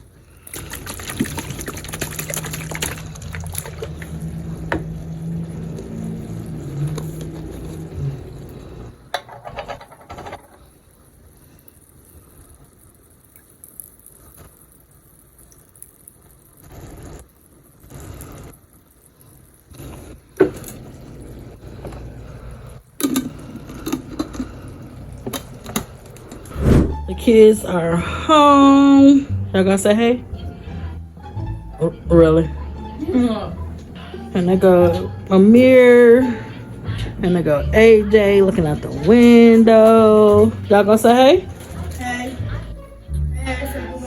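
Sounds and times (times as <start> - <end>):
running water: 0.3 - 8.9
pots and utensils clinking: 9.1 - 10.7.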